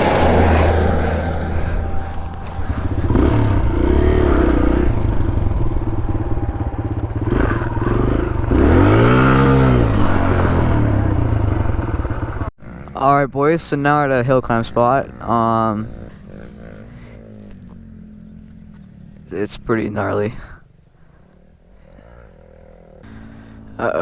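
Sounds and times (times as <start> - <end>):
dirt bike engine running: 0.0 - 12.9, 14.3 - 20.8, 23.0 - 24.0.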